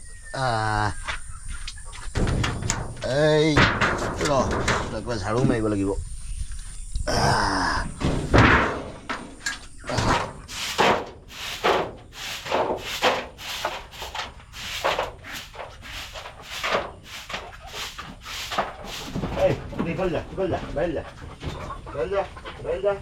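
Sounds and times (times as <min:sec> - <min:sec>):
broom sweeping: 0:10.0 - 0:19.7.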